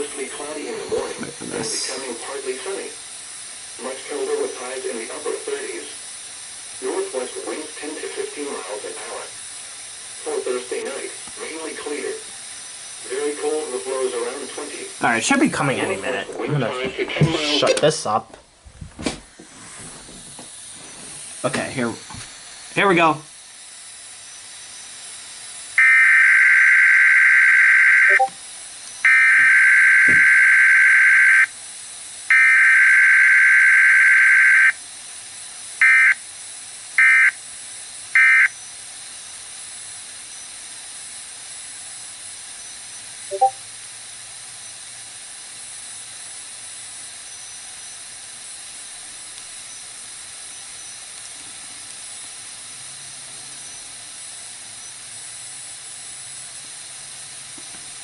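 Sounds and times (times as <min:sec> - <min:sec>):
radio receiver static hiss: 0:00.0 - 0:58.0
screeching two-tone data bursts: 0:25.7 - 0:28.3, 0:28.9 - 0:31.6, 0:32.3 - 0:34.8, 0:35.8 - 0:36.2, 0:37.0 - 0:37.4, 0:38.1 - 0:38.8, 0:42.6 - 0:43.6.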